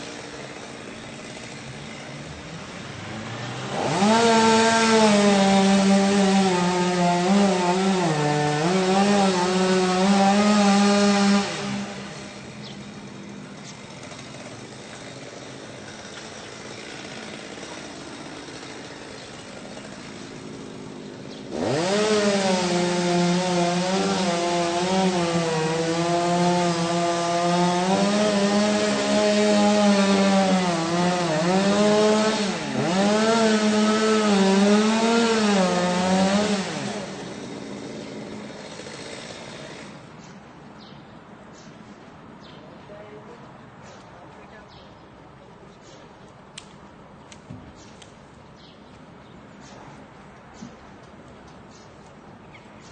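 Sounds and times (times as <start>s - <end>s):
chainsaw revving and idling: 0.0s - 40.2s.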